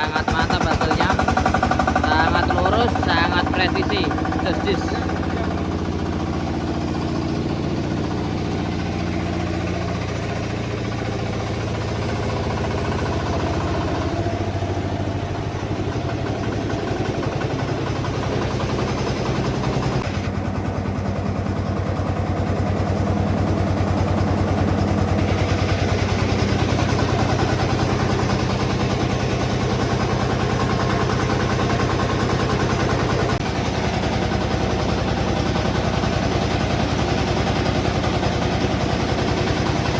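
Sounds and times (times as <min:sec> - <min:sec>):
bandsaw sawmill droning: 0:00.0 - 0:39.9.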